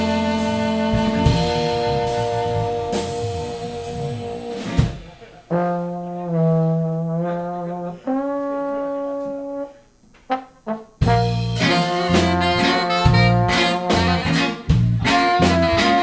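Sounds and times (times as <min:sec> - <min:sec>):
live band playing: 0:00.0 - 0:07.3, 0:10.3 - 0:16.0
horns holding long notes: 0:00.0 - 0:16.0
short horn stabs: 0:00.0 - 0:16.0.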